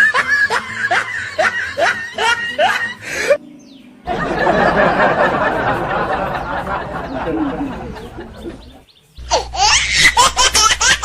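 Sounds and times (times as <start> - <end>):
person laughing: 4.1 - 11.0.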